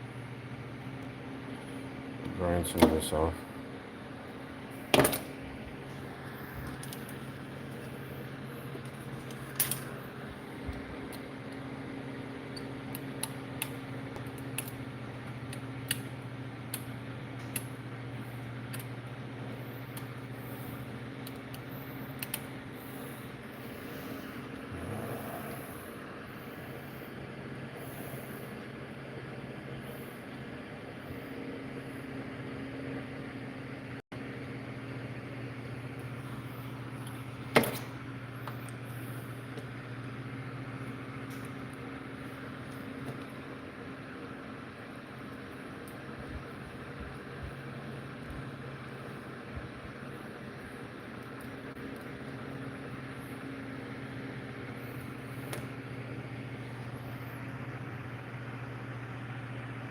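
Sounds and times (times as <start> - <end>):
mechanical hum: 0.0 - 59.9
electric motor hum: 5.5 - 27.1.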